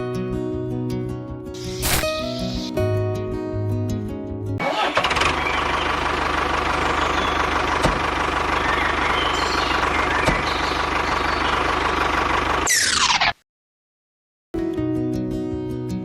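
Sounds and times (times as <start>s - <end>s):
small engine running: 4.6s - 13.3s.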